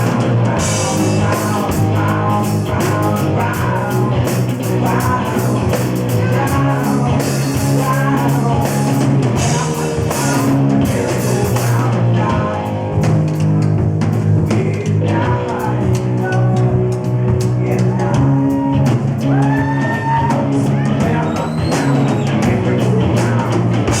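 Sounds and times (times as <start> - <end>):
drum kit beat: 0.0 - 24.0
rock band playing live: 0.0 - 24.0.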